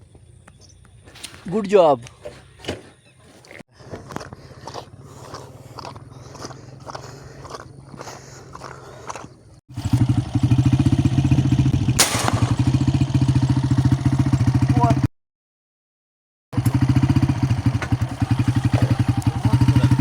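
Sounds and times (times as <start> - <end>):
engine running: 3.7 - 15.1, 16.6 - 20.0
sharp crack: 12.0 - 13.1.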